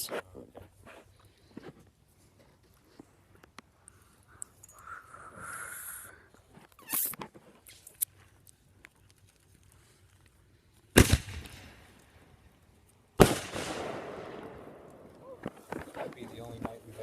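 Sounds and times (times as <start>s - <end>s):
fireworks popping: 10.9s - 12.0s, 13.2s - 17.0s
fireworks loud bangs: 11.0s - 11.8s, 13.2s - 14.9s.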